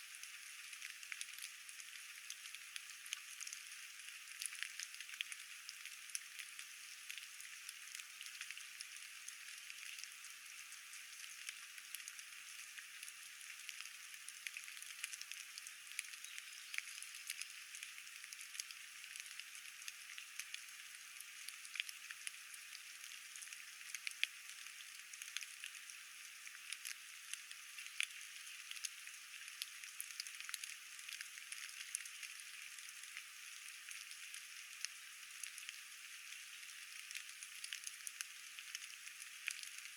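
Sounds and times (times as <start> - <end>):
steady rain patter: 11.2 - 39.9.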